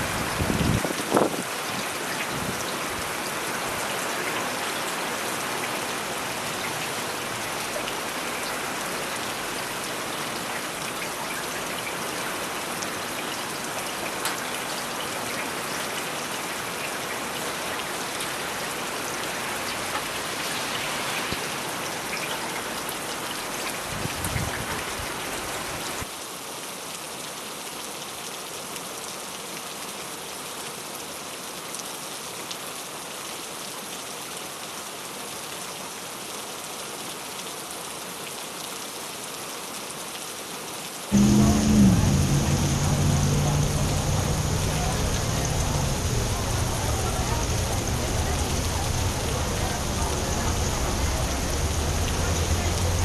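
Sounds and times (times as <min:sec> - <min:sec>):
rain on wet street: 0:00.0 - 0:53.0
low rumble: 0:41.1 - 0:53.0.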